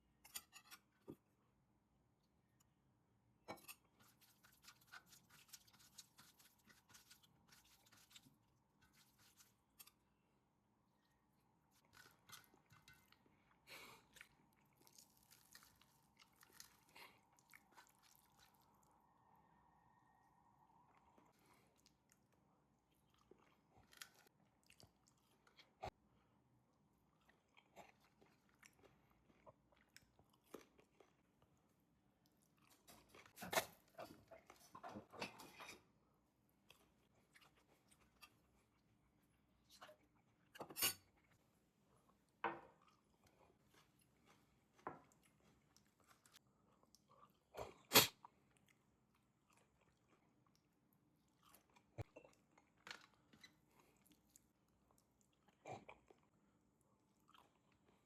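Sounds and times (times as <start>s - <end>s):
person chewing: 11.7s - 19.0s, 20.9s - 26.0s, 27.0s - 31.6s, 42.7s - 58.0s.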